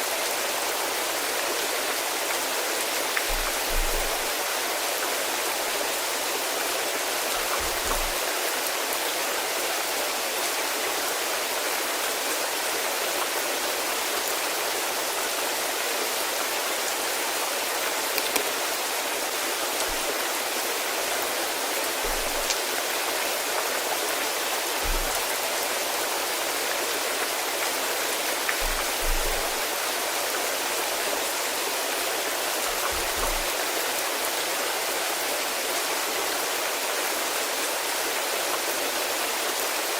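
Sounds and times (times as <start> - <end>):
steady rain falling: 0.0 - 39.9
low thuds: 24.8 - 25.3, 28.6 - 29.6.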